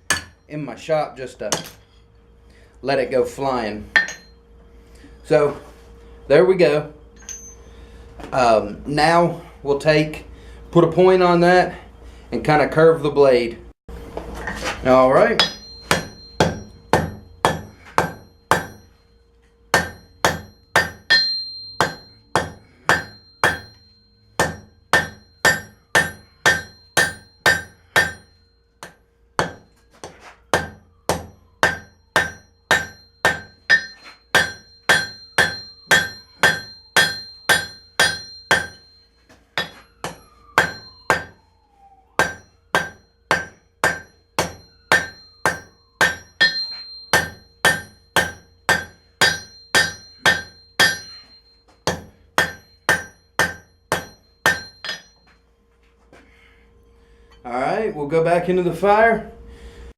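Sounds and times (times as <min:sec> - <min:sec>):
hammer blows on anvil: 0:00.0 - 0:00.5, 0:03.9 - 0:04.4, 0:15.2 - 0:19.0, 0:19.7 - 0:41.5, 0:42.2 - 0:55.4.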